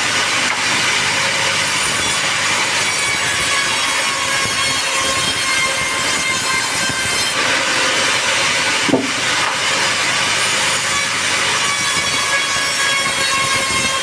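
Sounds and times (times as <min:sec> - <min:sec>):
saw cutting log: 0:00.0 - 0:14.0
sharp knock: 0:08.9 - 0:09.2.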